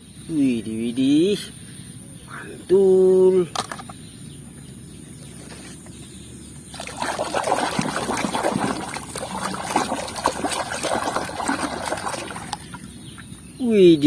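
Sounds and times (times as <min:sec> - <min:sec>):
water splashing and trickling: 0:06.7 - 0:13.8
scrubbing toy by hand: 0:06.8 - 0:12.7.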